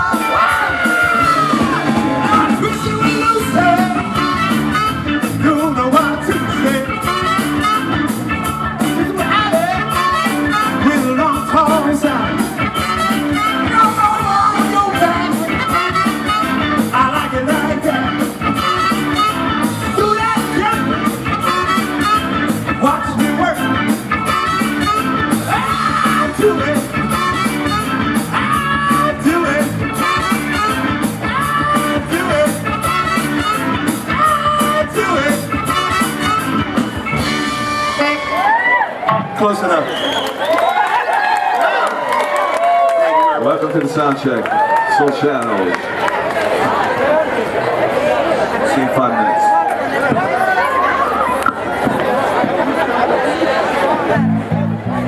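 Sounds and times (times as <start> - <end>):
steady drum beat: 0.0 - 37.9
person singing: 0.0 - 38.0
live rock band playing: 0.0 - 39.4, 54.0 - 55.0.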